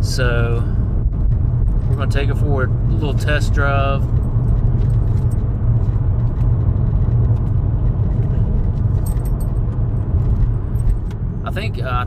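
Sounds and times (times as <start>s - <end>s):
car interior road and engine noise: 0.0s - 12.0s.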